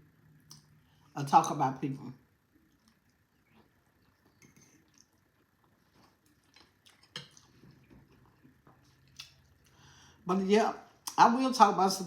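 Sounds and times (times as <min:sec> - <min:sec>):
mouth chewing clicks and smacks: 0:02.7 - 0:09.7.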